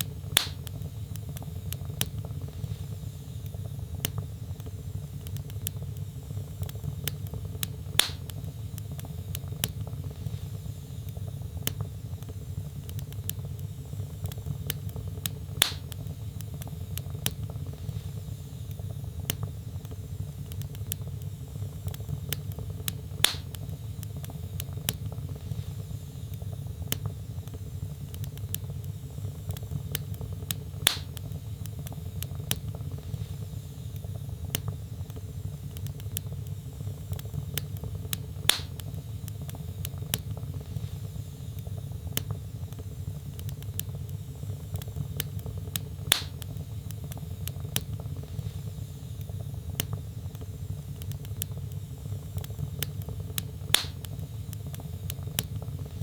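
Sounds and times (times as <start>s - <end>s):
fire popping loudly: 0.0s - 10.5s, 11.2s - 25.9s, 26.6s - 56.0s
fire rumbling and crackling: 0.0s - 56.0s.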